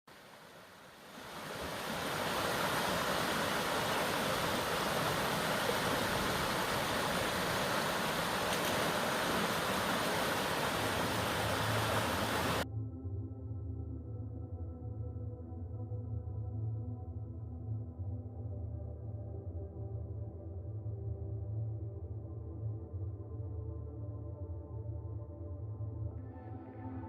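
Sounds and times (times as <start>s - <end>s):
waterfall roaring: 0.1s - 12.6s.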